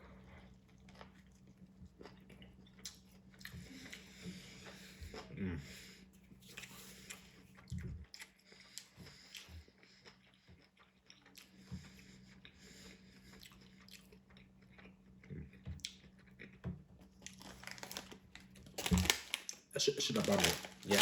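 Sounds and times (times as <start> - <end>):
person chewing sandwich: 0.0 - 21.0.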